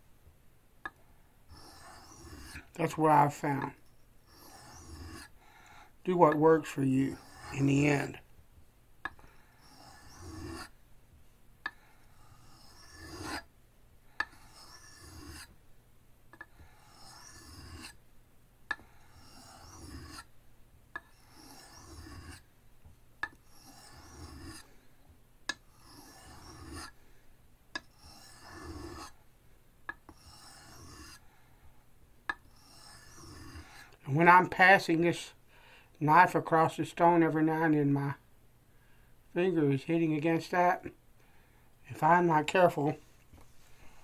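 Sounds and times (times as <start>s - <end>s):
knife scraping on sharpening stone: 1.5s - 3.7s, 4.3s - 5.3s, 6.3s - 8.2s, 9.6s - 10.7s, 12.2s - 13.4s, 14.2s - 15.5s, 16.8s - 18.0s, 19.1s - 20.2s, 21.0s - 22.4s, 23.2s - 24.6s, 25.7s - 26.9s, 27.8s - 29.1s, 30.1s - 31.2s, 32.6s - 33.8s.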